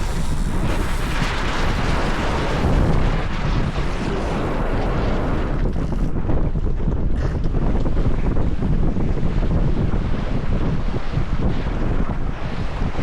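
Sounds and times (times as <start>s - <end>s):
water rushing along hull: 0.0s - 6.2s
wind buffeting microphone: 0.0s - 13.0s.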